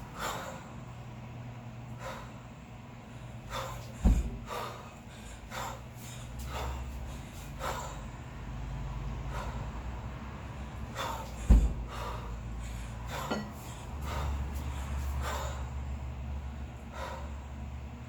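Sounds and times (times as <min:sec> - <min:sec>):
person breathing forcefully: 0:00.0 - 0:00.9, 0:01.9 - 0:17.9
heavy thud: 0:03.9 - 0:04.6, 0:11.2 - 0:12.2.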